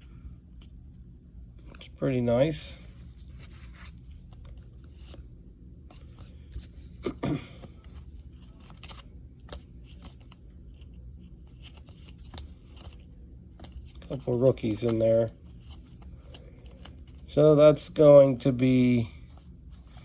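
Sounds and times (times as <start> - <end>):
trading cards being flipped: 2.8 - 18.0.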